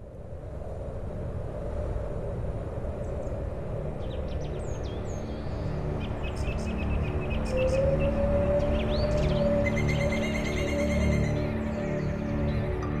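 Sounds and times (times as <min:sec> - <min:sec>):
songbirds chirping: 0:02.9 - 0:13.0
downward-sweeping whistles: 0:06.1 - 0:12.9.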